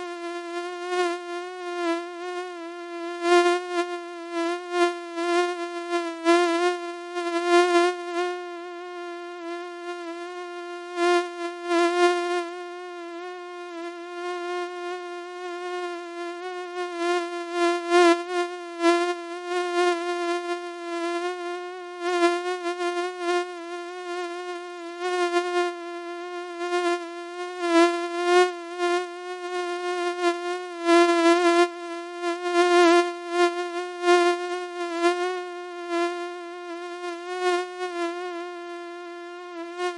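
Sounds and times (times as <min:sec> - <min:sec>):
mosquito buzzing: 0:00.0 - 0:39.9.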